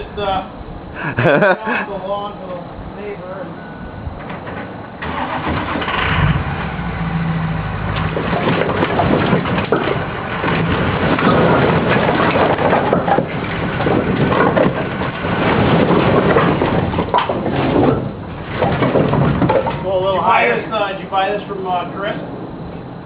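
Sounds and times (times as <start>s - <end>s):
loud clattering and crunching: 4.2s - 20.9s.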